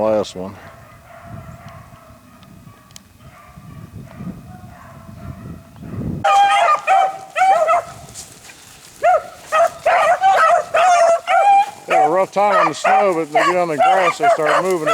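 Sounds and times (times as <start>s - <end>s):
beagles baying: 6.2s - 14.9s.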